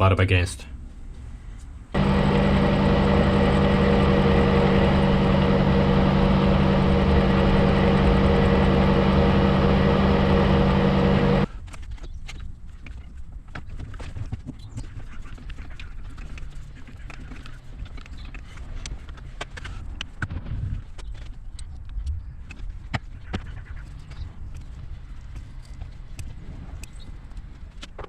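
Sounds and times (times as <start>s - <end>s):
metal lathe humming and whining: 2.0s - 11.5s.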